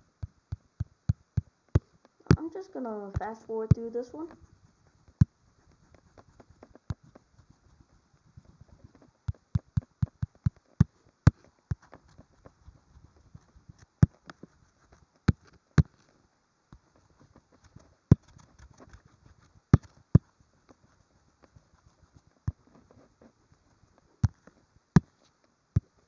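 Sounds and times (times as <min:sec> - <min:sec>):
stylus tapping tablet screen: 0:00.2 - 0:04.5, 0:08.6 - 0:12.8.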